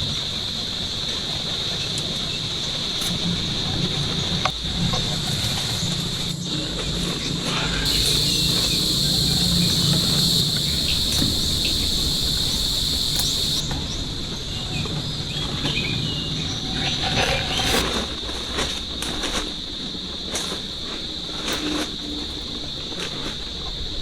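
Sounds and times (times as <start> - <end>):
insects buzzing drone: 7.9 - 13.7.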